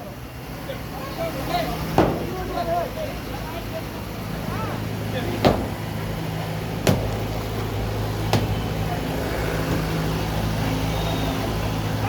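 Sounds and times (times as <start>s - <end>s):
vehicle engine running: 0.0s - 12.0s
sharp knocks: 2.0s - 2.5s, 5.4s - 6.2s, 6.8s - 8.9s.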